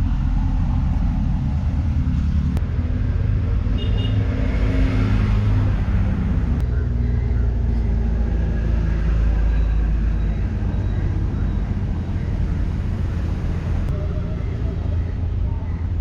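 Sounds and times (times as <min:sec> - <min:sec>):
engine running with low rumble: 0:00.0 - 0:16.0
faint voices: 0:06.6 - 0:16.0.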